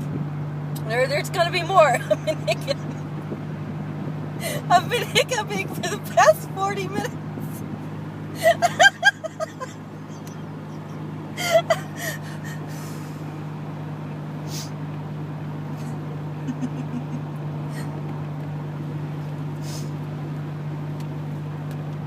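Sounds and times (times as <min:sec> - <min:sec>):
car interior drone: 0:00.0 - 0:22.0
woman laughing: 0:01.8 - 0:03.0, 0:08.4 - 0:12.6, 0:16.4 - 0:17.2.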